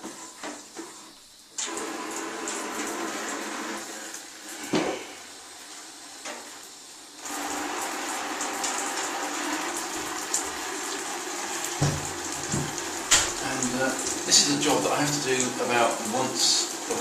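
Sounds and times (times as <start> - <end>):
water rushing into a bucket: 0.0 - 17.0
knock: 11.8 - 13.4.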